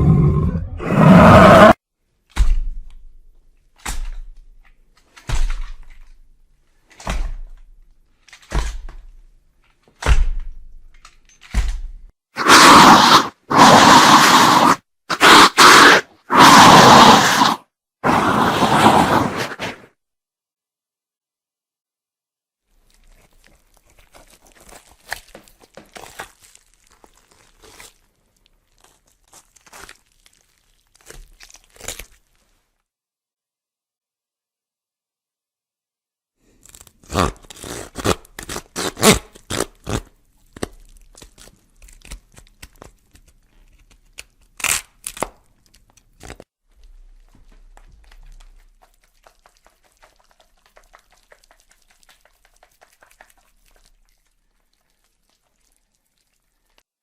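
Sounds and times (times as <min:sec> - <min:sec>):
crunching and crackling: 0:22.7 - 0:32.7, 0:36.4 - 0:56.9.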